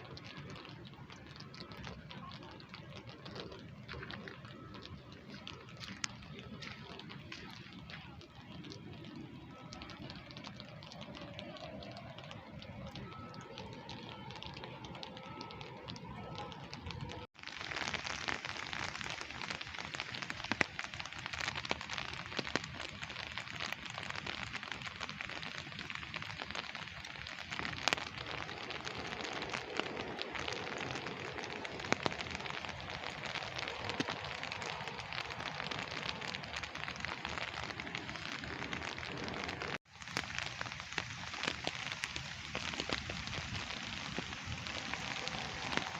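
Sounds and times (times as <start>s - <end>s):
sharp drips and taps: 0.0s - 17.3s
steady rain falling: 0.0s - 45.9s.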